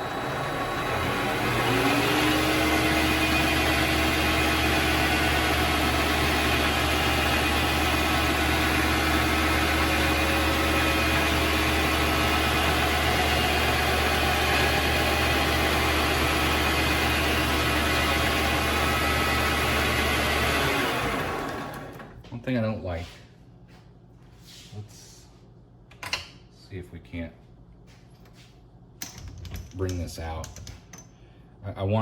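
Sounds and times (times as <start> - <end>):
lathe motor whine: 0.0 - 22.2.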